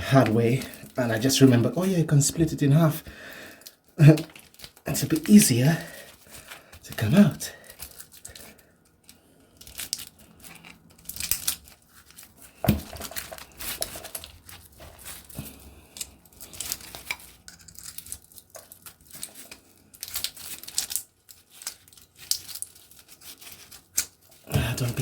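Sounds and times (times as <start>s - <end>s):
copper wire tearing and scraping: 9.6s - 24.9s.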